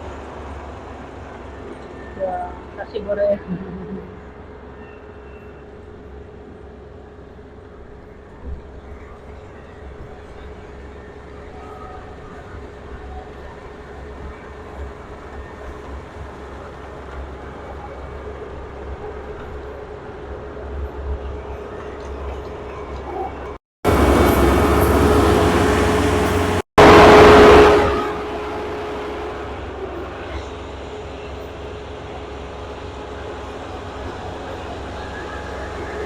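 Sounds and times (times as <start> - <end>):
combine harvester drone: 23.8 - 36.0.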